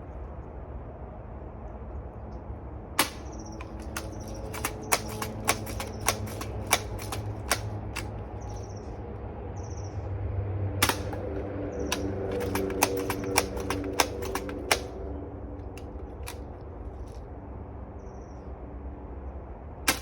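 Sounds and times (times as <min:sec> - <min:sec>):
air rifle mechanical clicks: 0:03.0 - 0:08.7, 0:10.8 - 0:17.2.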